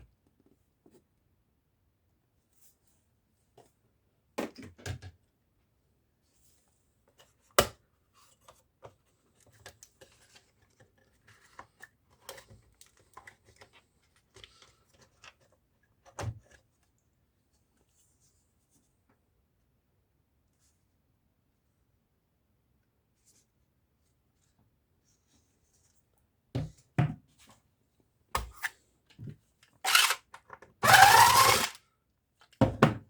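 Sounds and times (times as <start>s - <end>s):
parts scraping and rustling: 29.9s - 31.8s.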